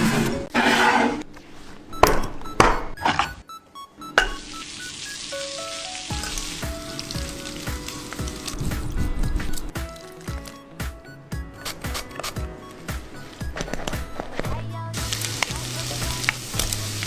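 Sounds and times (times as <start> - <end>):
background music: 2.0 - 17.0
food sizzling in a pan: 4.2 - 9.7, 13.0 - 17.0.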